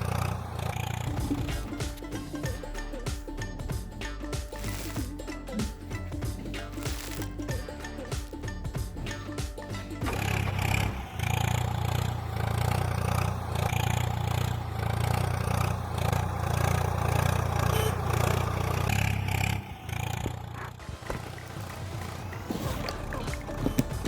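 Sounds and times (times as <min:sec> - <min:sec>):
miniature machine motor humming: 0:00.0 - 0:02.6, 0:04.0 - 0:05.6, 0:06.4 - 0:08.4, 0:10.0 - 0:20.7.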